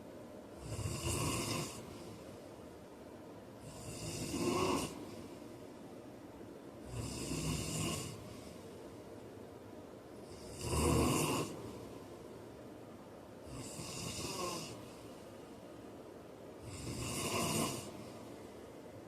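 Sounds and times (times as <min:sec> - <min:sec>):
man snoring: 0:00.6 - 0:02.0, 0:03.6 - 0:05.0, 0:06.8 - 0:08.4, 0:10.2 - 0:11.7, 0:13.4 - 0:14.9, 0:16.6 - 0:18.1.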